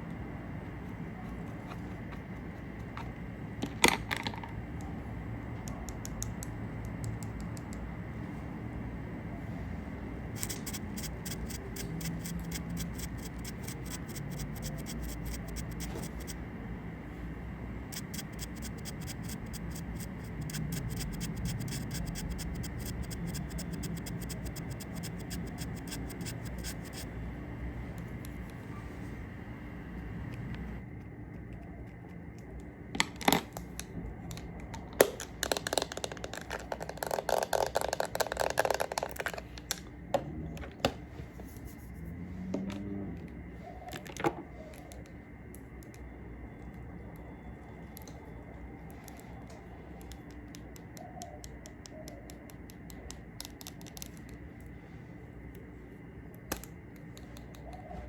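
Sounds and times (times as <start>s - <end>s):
rapid fine scratching: 10.4s - 16.4s, 17.9s - 27.2s.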